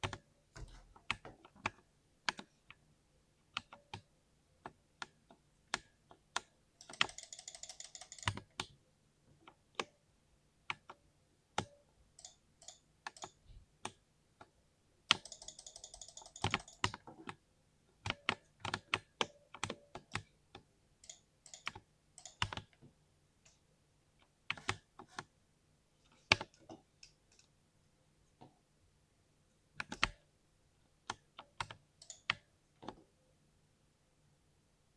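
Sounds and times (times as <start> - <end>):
deep mechanical keyboard typing: 5.7 - 8.7, 15.1 - 17.4, 21.0 - 22.8, 31.1 - 32.5.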